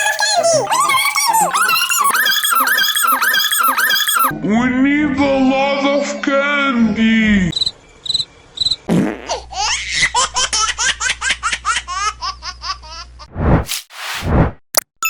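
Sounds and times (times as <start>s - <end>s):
child laughing: 0.0s - 3.3s
rushes of noise: 13.4s - 14.5s.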